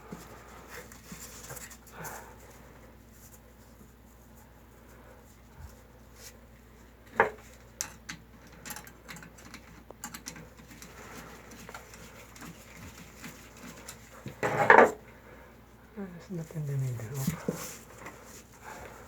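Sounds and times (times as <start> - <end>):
clicks and knocks on a pipe: 7.1 - 15.0.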